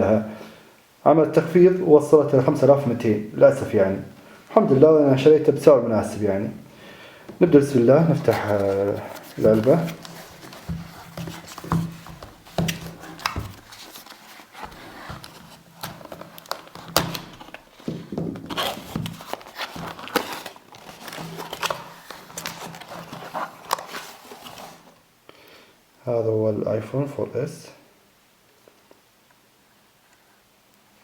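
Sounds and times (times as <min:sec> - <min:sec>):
packaging rustles and scrapes: 0:07.6 - 0:25.0.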